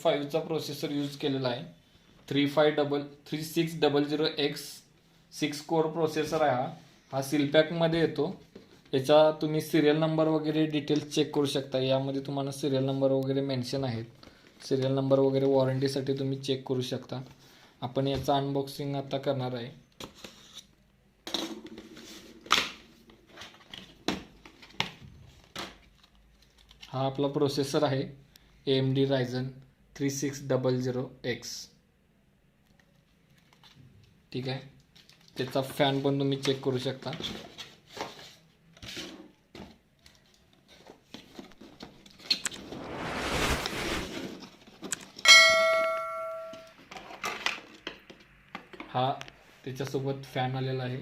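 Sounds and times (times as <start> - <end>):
bell-like metallic ring: 45.3 - 46.8.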